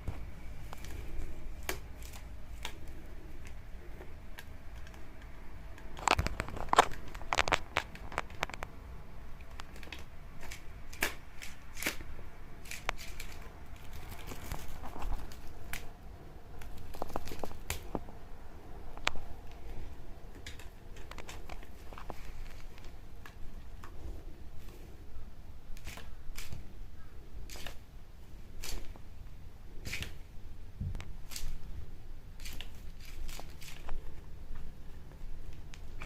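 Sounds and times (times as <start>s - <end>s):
cat toy rustling and crinkling: 0.0s - 5.1s, 5.8s - 8.7s, 9.4s - 18.2s, 18.8s - 25.1s, 32.4s - 36.0s.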